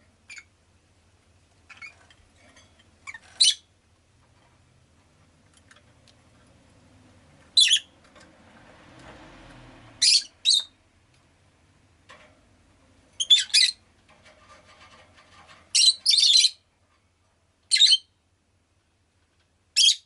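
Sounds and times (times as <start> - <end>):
lovebird chirping: 0.2 - 0.5, 1.7 - 2.0, 3.0 - 3.7, 7.5 - 7.9, 10.0 - 10.8, 13.2 - 13.8, 15.7 - 16.6, 17.7 - 18.2, 19.8 - 20.0
faint street noise: 3.2 - 15.7.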